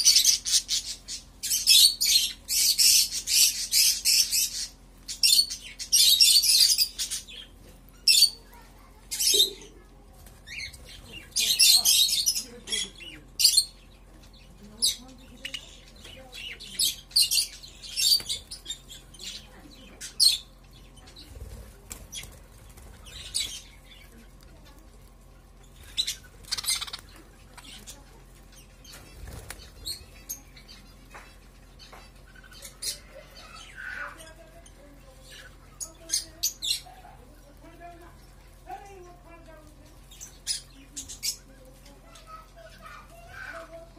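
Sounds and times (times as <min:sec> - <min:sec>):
budgerigars chirping: 0:00.0 - 0:08.4, 0:10.5 - 0:24.2, 0:25.6 - 0:38.1
wing flapping: 0:21.1 - 0:23.7, 0:28.9 - 0:30.1.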